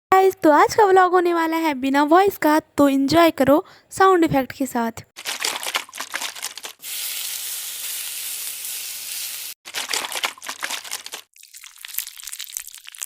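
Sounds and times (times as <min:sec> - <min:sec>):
crinkling and crackling: 0:05.2 - 0:06.8, 0:09.7 - 0:13.0.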